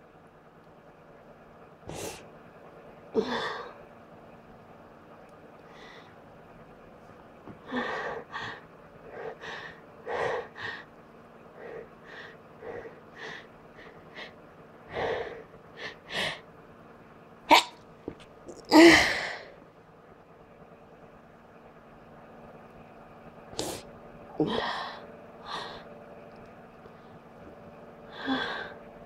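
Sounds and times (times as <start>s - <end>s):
person sneezing: 17.5s - 17.8s.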